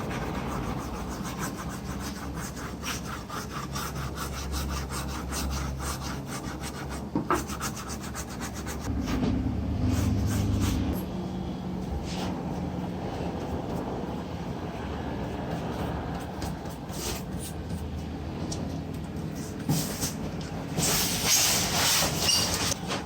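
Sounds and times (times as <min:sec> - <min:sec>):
rapid rubbing strokes: 0:00.0 - 0:09.2.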